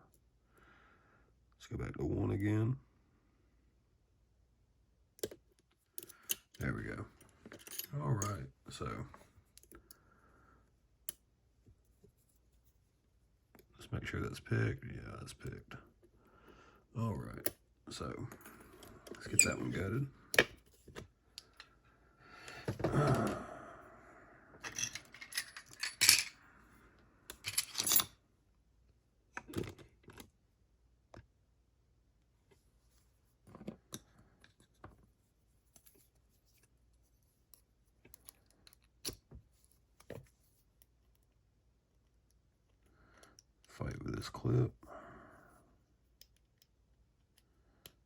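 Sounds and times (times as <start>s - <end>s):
metal lock parts clicking: 7.5s - 8.4s, 24.7s - 26.3s, 27.3s - 28.1s.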